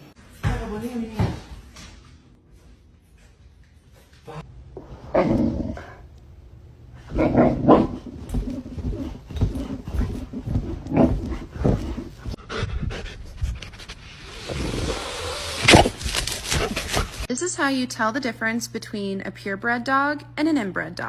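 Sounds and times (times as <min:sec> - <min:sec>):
dog panting: 0:07.0 - 0:14.0.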